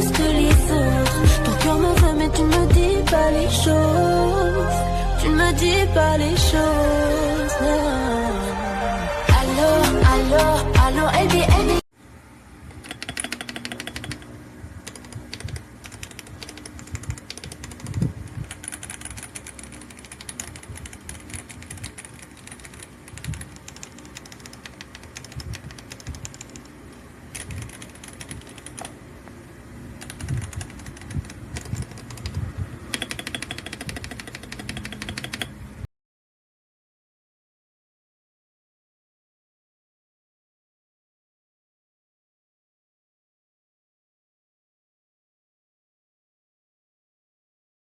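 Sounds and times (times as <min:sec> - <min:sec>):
mechanical keyboard typing: 0:12.8 - 0:29.0, 0:30.0 - 0:35.6.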